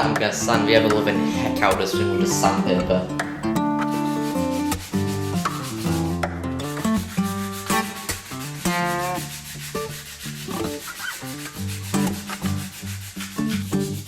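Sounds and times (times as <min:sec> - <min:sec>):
sandpaper rubbing on wood: 0:03.8 - 0:14.0.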